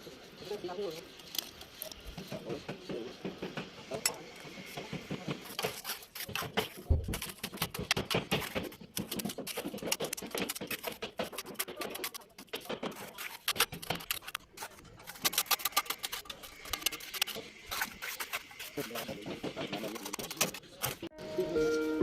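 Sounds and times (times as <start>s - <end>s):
hand tools scraping masonry: 0.3s - 21.1s.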